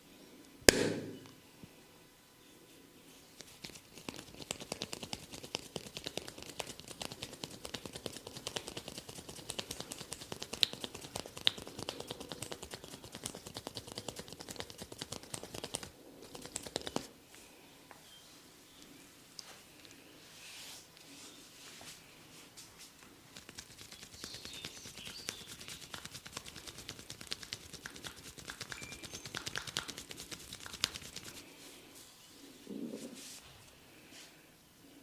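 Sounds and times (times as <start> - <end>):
hands patting and rubbing scalp: 3.3 - 17.1, 22.6 - 31.6.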